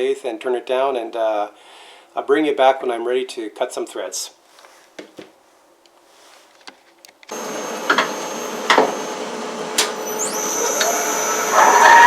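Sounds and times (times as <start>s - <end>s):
metalworking machine running: 7.3s - 12.0s
thin high whine: 7.3s - 12.0s.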